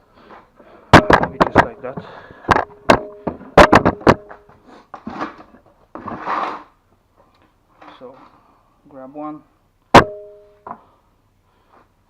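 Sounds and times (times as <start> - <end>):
soft scraping rustles: 4.5 - 8.5.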